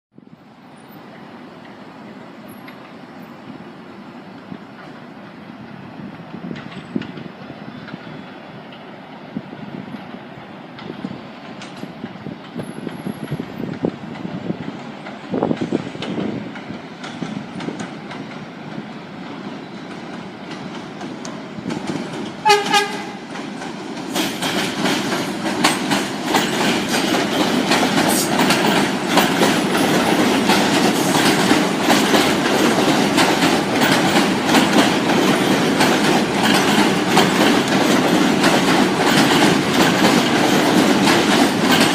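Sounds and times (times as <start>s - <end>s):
subway train rumble: 0.1s - 41.9s
wheels clicking over rail joints: 0.8s - 3.3s, 4.4s - 9.0s, 9.9s - 41.9s
train horn blast: 22.4s - 23.3s.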